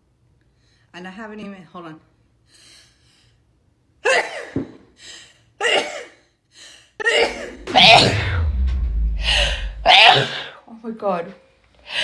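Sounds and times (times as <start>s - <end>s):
woman sneezing: 4.1s - 4.6s, 5.6s - 6.2s.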